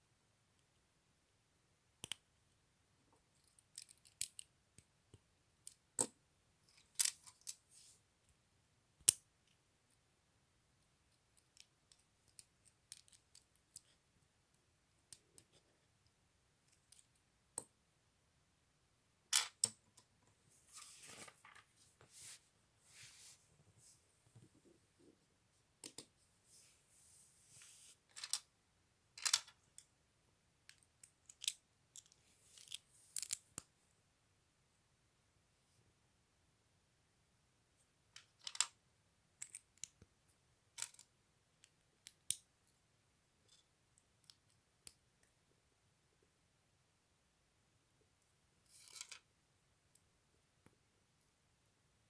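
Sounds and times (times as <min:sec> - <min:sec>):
soft rustling: 0:20.3 - 0:25.3, 0:26.2 - 0:28.0.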